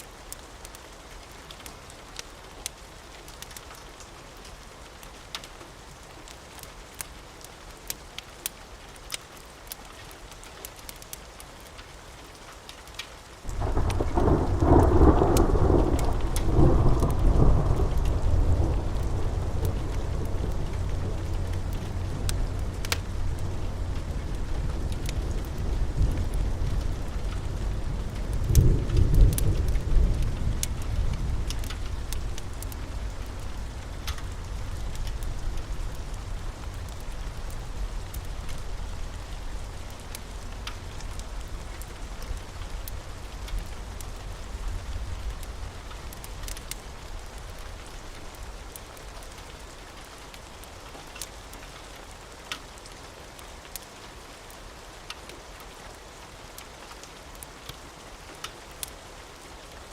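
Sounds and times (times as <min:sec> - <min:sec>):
steady rain: 0:00.0 - 0:59.9
sharp pops and crackles: 0:12.6 - 0:44.2, 0:44.9 - 0:49.4
thunder rolling: 0:13.5 - 0:37.6.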